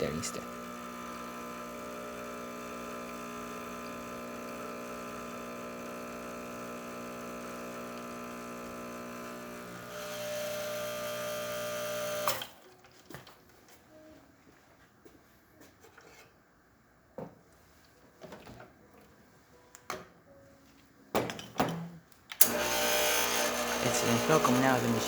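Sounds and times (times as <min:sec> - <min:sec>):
espresso machine pump buzzing: 0:00.1 - 0:12.6, 0:22.4 - 0:25.0.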